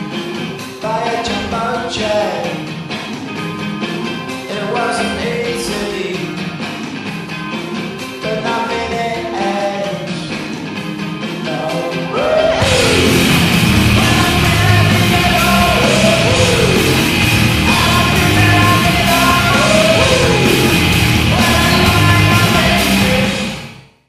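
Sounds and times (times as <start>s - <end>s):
hard rock with shouted vocals: 0.0s - 3.0s, 3.6s - 7.0s, 8.0s - 23.8s.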